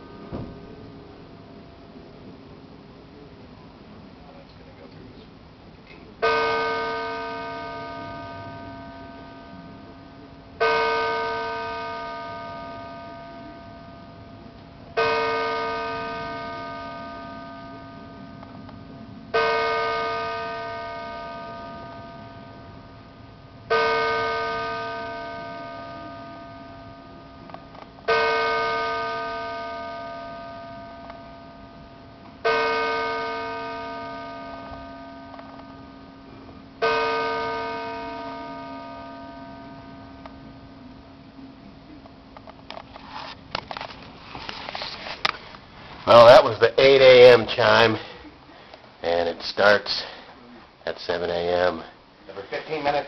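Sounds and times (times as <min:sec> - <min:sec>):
church bell striking: 0:00.0 - 0:02.1, 0:06.2 - 0:41.4
low hum tone: 0:00.0 - 0:49.5.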